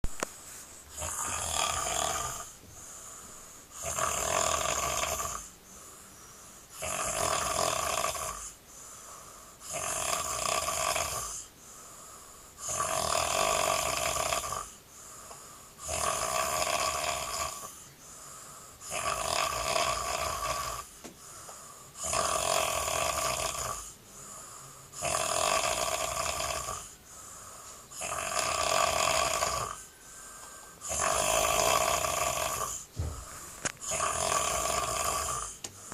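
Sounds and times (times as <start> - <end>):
quiet breaths: 0.1 - 35.9
man snoring loudly: 0.9 - 2.6, 3.7 - 5.5, 6.7 - 8.6, 9.6 - 11.5, 12.6 - 14.8, 15.8 - 17.9, 18.8 - 20.9, 21.9 - 29.9, 30.8 - 35.9.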